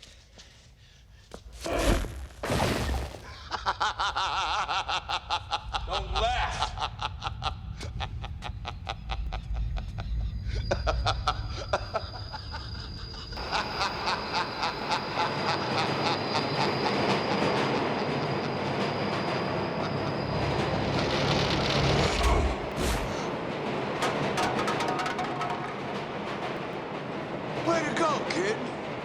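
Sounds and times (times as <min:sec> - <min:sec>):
subway train running: 0:03.4 - 0:29.0
wheels clicking over rails: 0:16.1 - 0:29.0.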